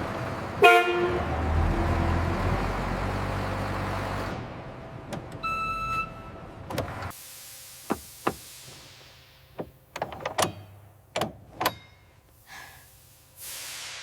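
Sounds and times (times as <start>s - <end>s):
hiss: 7.1s - 9.6s, 12.3s - 14.0s
sharp clicks and knocks: 9.6s - 12.0s.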